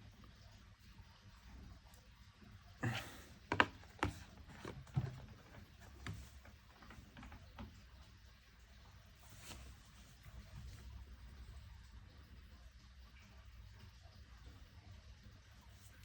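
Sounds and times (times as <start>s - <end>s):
phone handling clicks and knocks: 3.5s - 5.2s.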